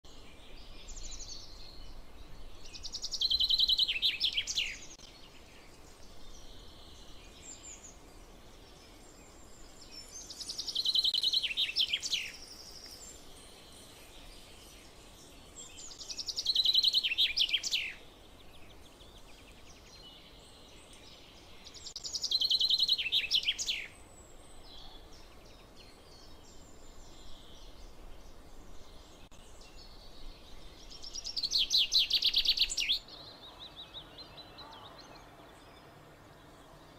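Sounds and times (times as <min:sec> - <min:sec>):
chaffinch singing trills: 0:00.1 - 0:36.9
faint bird chirps: 0:00.1 - 0:36.9.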